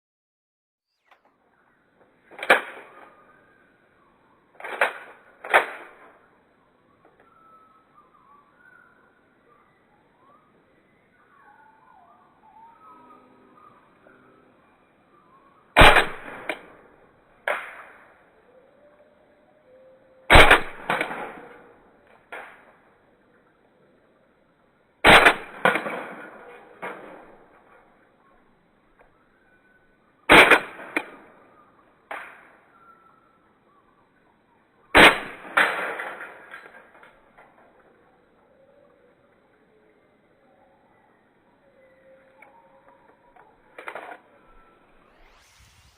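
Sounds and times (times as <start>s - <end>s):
airsoft pistol shots: 15.8s - 18.1s, 20.3s - 21.7s, 25.0s - 27.4s, 30.3s - 31.4s, 35.0s - 36.8s.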